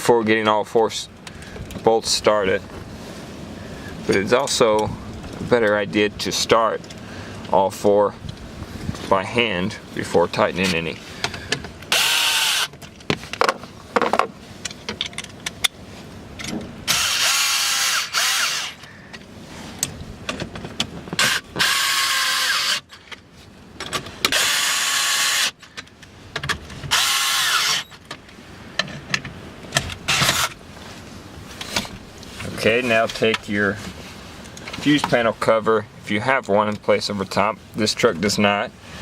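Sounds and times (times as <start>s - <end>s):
power drill running: 11.9s - 12.7s, 16.9s - 18.8s, 21.2s - 22.9s, 24.3s - 25.6s, 26.9s - 28.0s.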